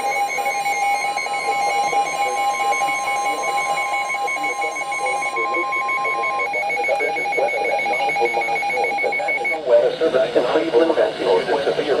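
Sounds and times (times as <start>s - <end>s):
high warning alarm tone: 0.0s - 9.6s
rapid electronic beeping: 0.0s - 9.6s.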